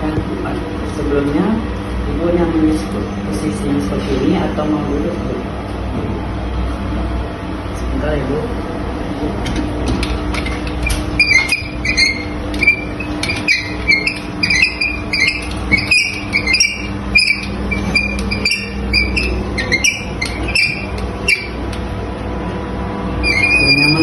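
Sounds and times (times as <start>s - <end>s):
steady low hum: 0.0s - 24.0s
hospital bed squeaks and clicks: 9.9s - 21.9s, 23.2s - 24.0s.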